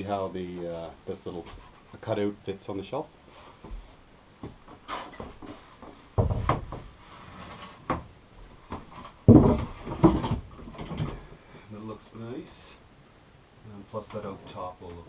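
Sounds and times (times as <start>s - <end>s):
loud wooden thumps: 4.4s - 7.0s, 8.7s - 11.3s
wooden board knocking against shelf: 5.2s - 6.9s, 8.7s - 11.2s.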